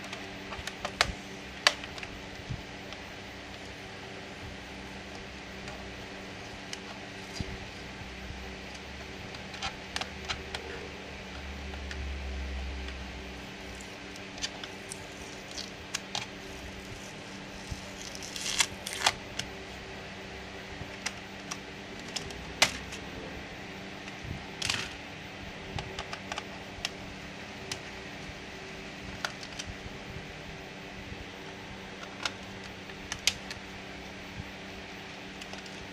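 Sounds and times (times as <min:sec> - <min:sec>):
steady low hum: 0:00.0 - 0:35.9
plastic laptop parts clicking: 0:32.0 - 0:33.6.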